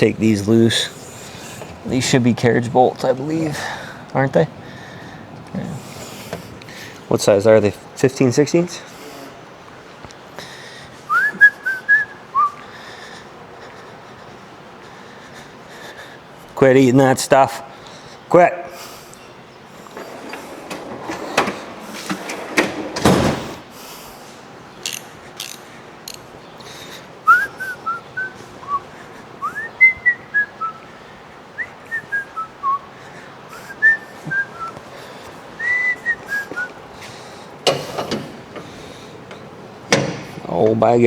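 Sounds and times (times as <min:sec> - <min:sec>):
person whistling a tune: 0:11.1 - 0:12.6, 0:27.3 - 0:30.8, 0:31.6 - 0:32.9, 0:33.5 - 0:34.8, 0:35.6 - 0:36.8.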